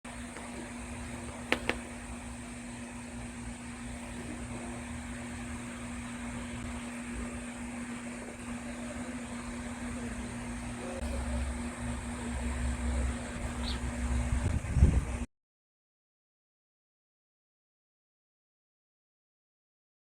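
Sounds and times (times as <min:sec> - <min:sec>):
machine hum: 0:00.1 - 0:15.3.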